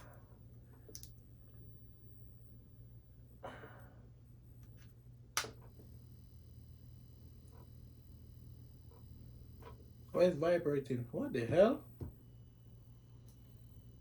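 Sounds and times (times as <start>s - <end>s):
low steady hum: 0.0s - 14.0s
faint high steady tones: 5.7s - 14.0s.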